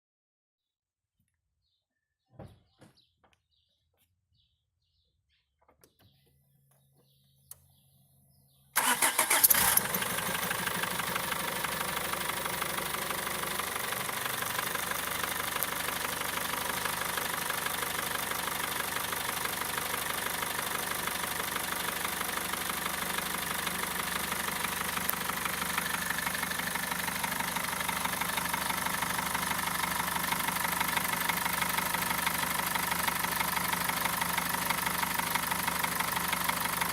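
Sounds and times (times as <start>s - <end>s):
diesel engine cranking and idling: 8.8s - 36.9s.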